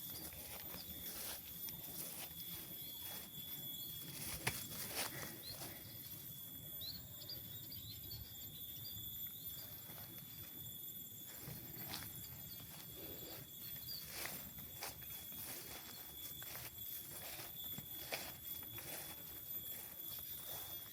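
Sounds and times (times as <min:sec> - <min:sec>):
footsteps crunching on trail: 0:00.0 - 0:06.3, 0:09.7 - 0:20.9
insects droning: 0:00.0 - 0:20.9
birds chirping: 0:12.0 - 0:16.2.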